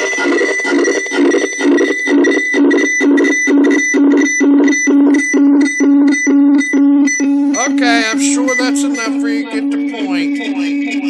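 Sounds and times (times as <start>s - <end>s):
pulsing electronic buzz: 0.0s - 11.0s.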